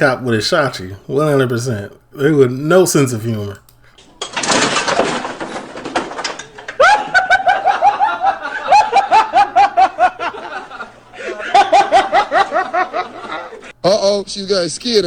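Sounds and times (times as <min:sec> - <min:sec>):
person laughing high-pitched: 0:06.8 - 0:13.7
breathy hissing: 0:11.0 - 0:11.6.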